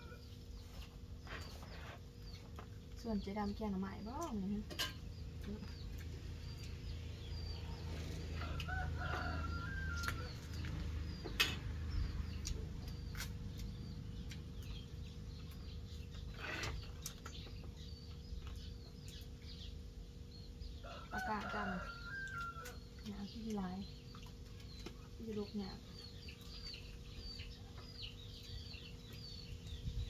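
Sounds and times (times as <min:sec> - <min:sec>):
small birds chirping: 0:00.0 - 0:30.0
rooster crowing: 0:08.3 - 0:10.4, 0:20.8 - 0:22.8.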